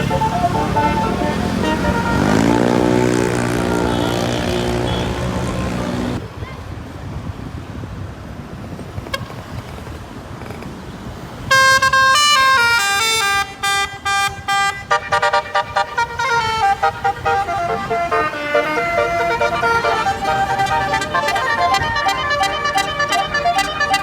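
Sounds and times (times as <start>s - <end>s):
bus horn playing a tune: 0.0s - 6.2s, 11.5s - 24.0s
low traffic noise: 0.0s - 24.0s.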